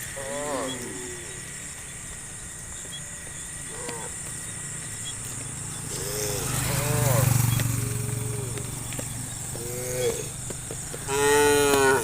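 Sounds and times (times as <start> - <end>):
high insect drone: 0.0 - 12.0
loud low cow moo: 0.2 - 1.4, 5.9 - 8.7, 9.5 - 10.4, 11.0 - 12.0
short cattle calls: 5.9 - 7.4, 11.0 - 12.0.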